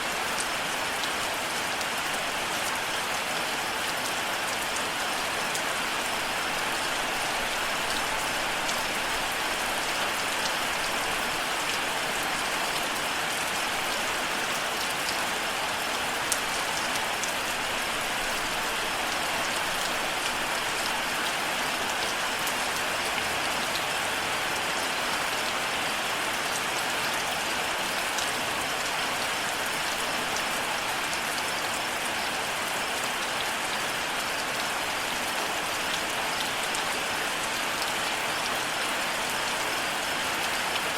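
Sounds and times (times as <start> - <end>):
steady rain: 0.0 - 40.9.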